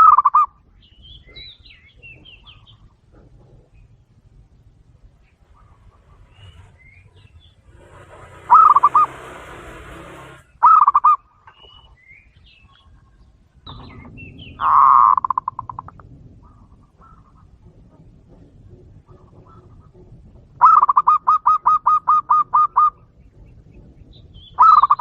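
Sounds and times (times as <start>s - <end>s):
small birds chirping: 0.0s - 25.0s
dove cooing: 5.4s - 11.2s, 14.6s - 23.2s, 24.6s - 25.0s.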